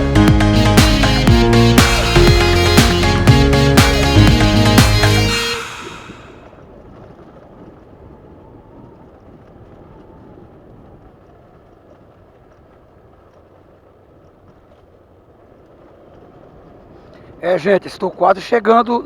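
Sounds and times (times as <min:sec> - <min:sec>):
road noise: 0:00.0 - 0:06.5.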